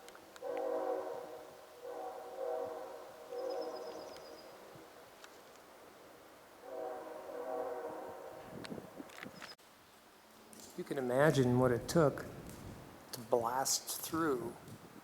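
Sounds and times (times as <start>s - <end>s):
train horn blasts: 0.4s - 4.5s, 6.6s - 8.6s.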